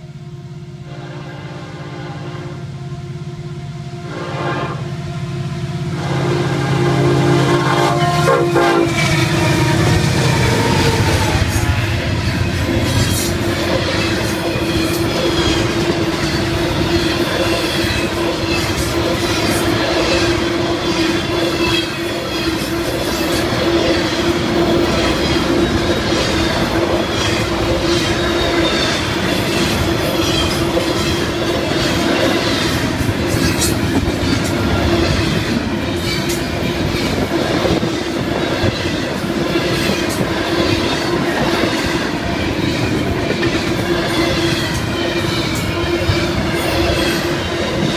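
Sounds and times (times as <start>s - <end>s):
train wheels rumbling on rails: 4.1s - 47.9s
ringing wheel squeal: 8.9s - 32.8s, 42.4s - 47.9s.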